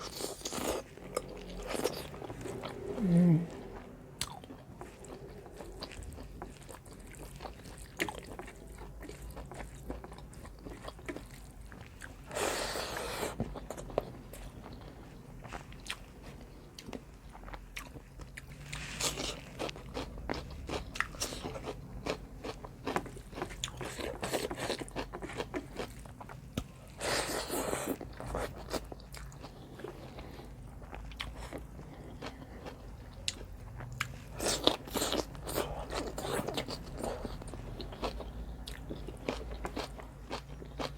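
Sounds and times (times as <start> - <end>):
person chewing food: 0.0 - 40.9.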